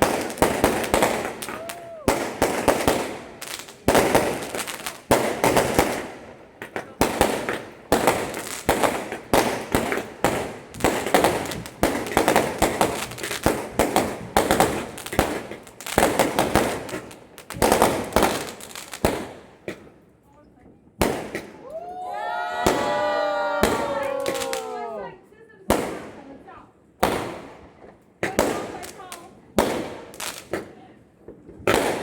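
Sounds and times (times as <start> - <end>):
fireworks bangs: 0.0 - 20.0, 20.6 - 32.0.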